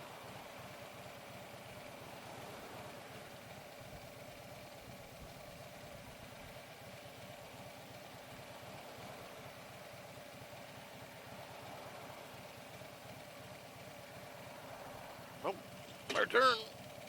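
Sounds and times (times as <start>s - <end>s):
motorcycle engine idling: 0.0s - 17.0s.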